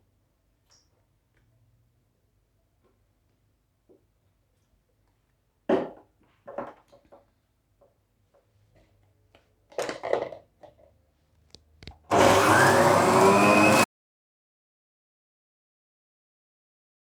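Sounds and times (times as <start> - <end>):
electric juicer motor whining: 12.1 - 13.9.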